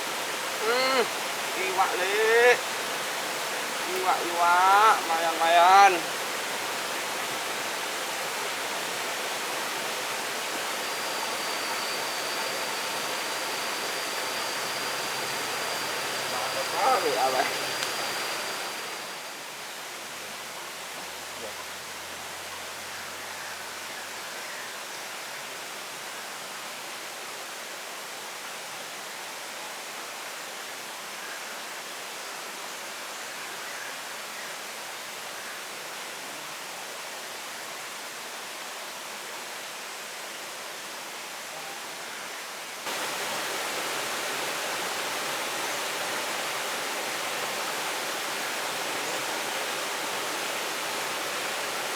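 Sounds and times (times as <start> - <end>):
river water rushing: 0.0 - 22.9, 42.8 - 51.9.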